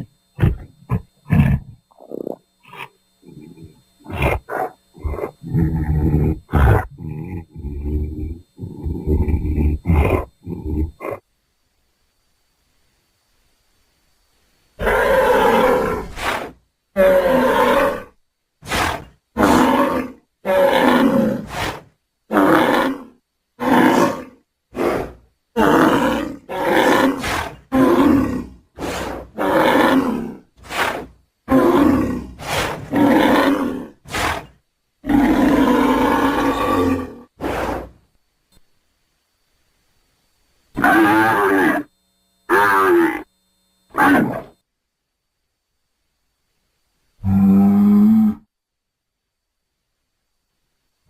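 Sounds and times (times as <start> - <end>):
bull bellowing and grunting: 0.0 - 11.3, 14.8 - 38.0, 40.8 - 41.9, 42.5 - 43.3, 43.9 - 44.6, 47.2 - 48.5.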